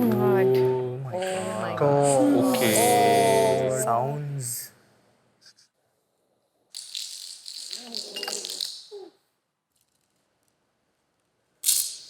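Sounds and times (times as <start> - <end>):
small hard pieces rattling: 6.8 - 8.9.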